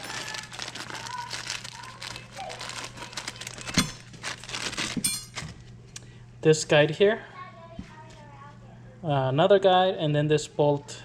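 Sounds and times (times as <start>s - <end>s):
packaging crinkling and rustling: 0.0s - 5.7s.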